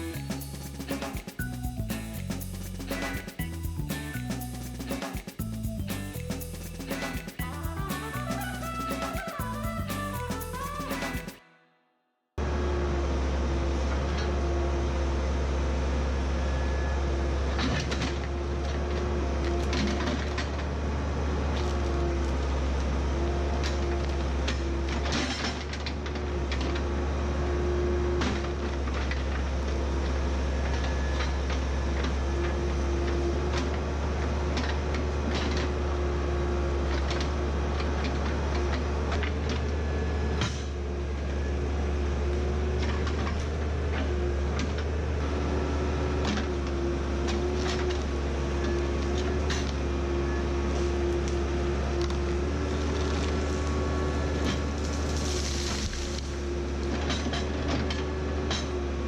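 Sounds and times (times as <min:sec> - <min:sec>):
diesel engine running: 0:25.8 - 0:59.0.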